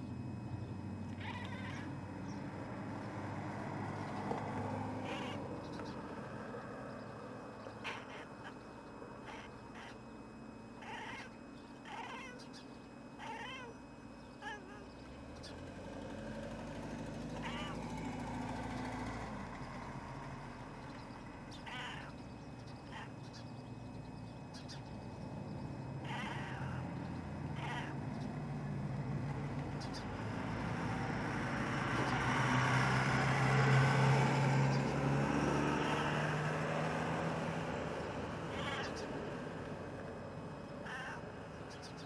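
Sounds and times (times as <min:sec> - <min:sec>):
cat meowing: 0:01.2 - 0:02.0, 0:05.0 - 0:05.4, 0:10.8 - 0:12.6, 0:13.2 - 0:13.8, 0:14.4 - 0:14.8, 0:17.4 - 0:17.8, 0:26.0 - 0:26.9, 0:27.6 - 0:28.0, 0:40.8 - 0:41.2
passing truck engine and road noise: 0:01.8 - 0:07.8, 0:15.1 - 0:21.5, 0:27.0 - 0:41.7.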